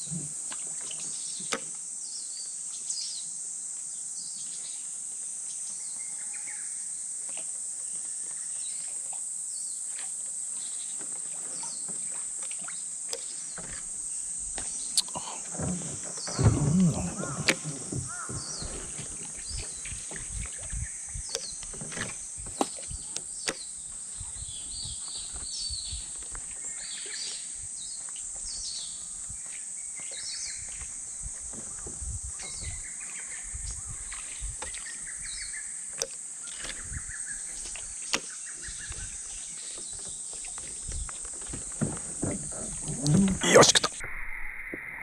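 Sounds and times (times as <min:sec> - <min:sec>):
low bumps: 0:15.2 - 0:20.9.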